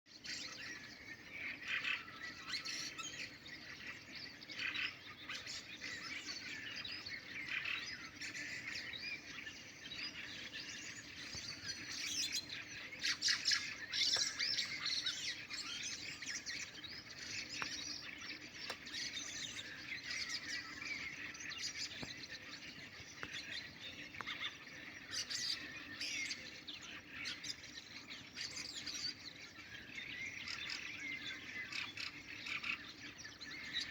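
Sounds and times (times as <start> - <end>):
nightingales singing: 0.1 - 33.9.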